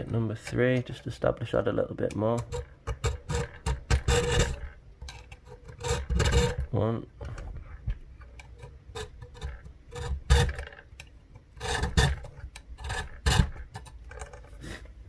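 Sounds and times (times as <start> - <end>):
hand file rasping on metal: 2.4 - 4.7, 5.4 - 6.7, 8.5 - 10.7, 11.6 - 13.8.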